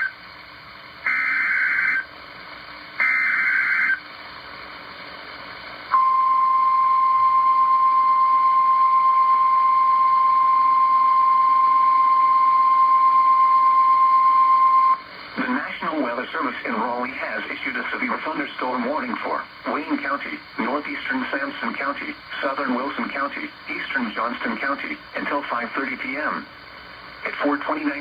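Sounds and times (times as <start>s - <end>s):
steady single-pitch alert tone: 1.1s - 2.0s, 3.0s - 4.0s, 5.9s - 15.0s.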